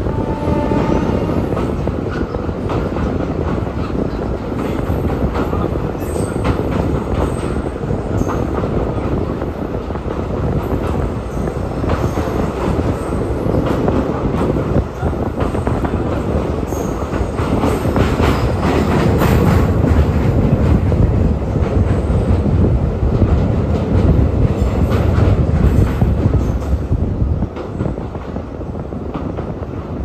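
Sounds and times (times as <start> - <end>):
train wheels rumbling on rails: 0.0 - 30.0.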